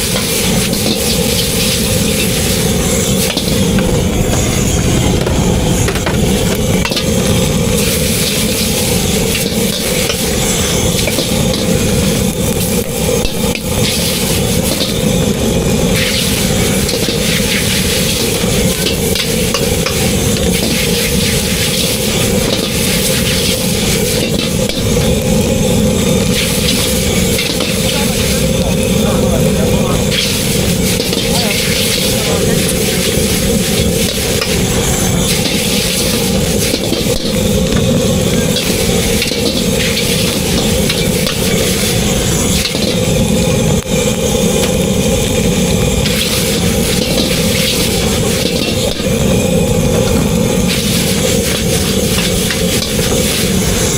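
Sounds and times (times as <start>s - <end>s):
food sizzling on a hot pan: 0.0s - 53.9s
loud steady roar: 0.0s - 53.9s
steady low drone: 0.0s - 53.9s.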